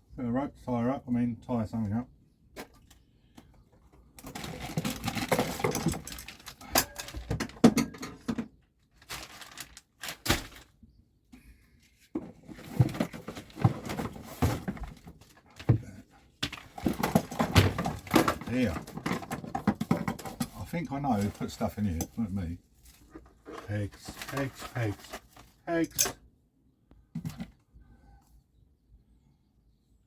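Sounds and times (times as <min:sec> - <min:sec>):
items knocking and rattling: 0:02.6 - 0:10.8, 0:12.0 - 0:22.2, 0:22.8 - 0:26.2, 0:27.1 - 0:27.6.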